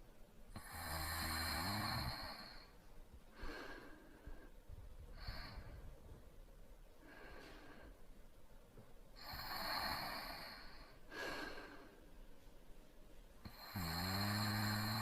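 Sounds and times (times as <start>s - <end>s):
soft breaths: 0.0s - 15.0s
man snoring: 0.6s - 2.7s, 9.2s - 10.8s, 13.5s - 15.0s.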